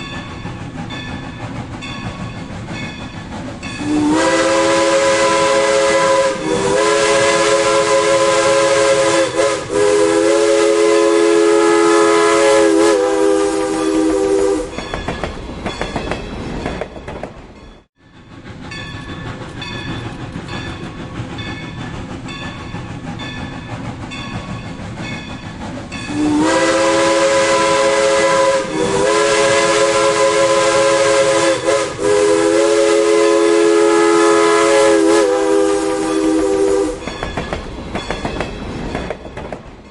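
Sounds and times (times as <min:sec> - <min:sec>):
train running with rhythmic clacking: 0:00.0 - 0:39.9
steam locomotive whistle: 0:03.8 - 0:14.8, 0:26.1 - 0:37.2.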